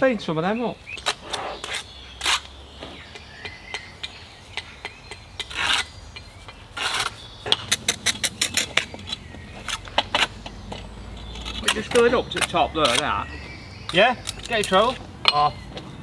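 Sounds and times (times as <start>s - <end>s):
trowel scraping mortar: 1.0s - 2.5s, 5.4s - 6.0s, 6.7s - 15.1s
sharp trowel taps: 11.3s - 13.1s.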